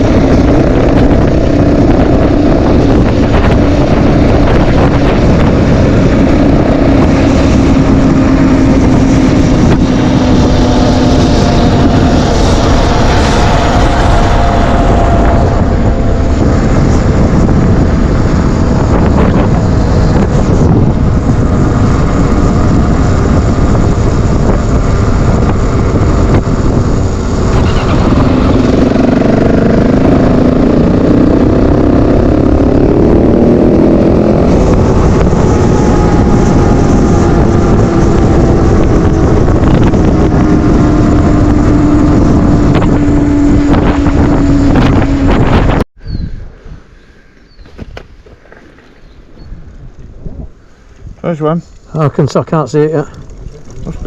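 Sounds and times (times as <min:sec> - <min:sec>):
motorcycle engine running: 0:00.0 - 0:46.2.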